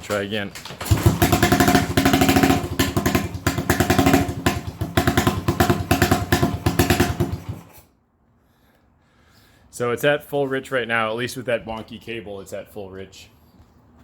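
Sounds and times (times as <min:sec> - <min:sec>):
motorcycle engine running unevenly: 0:00.8 - 0:07.7.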